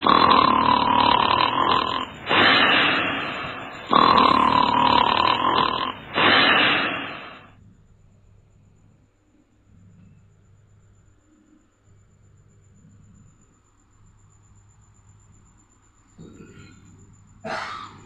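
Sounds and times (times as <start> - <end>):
loud whistling snoring: 0.0 - 7.5.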